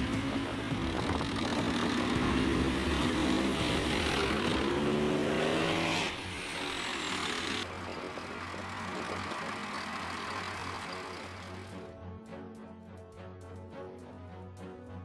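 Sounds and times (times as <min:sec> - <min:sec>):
vehicle engine speeding up: 0:00.0 - 0:07.7.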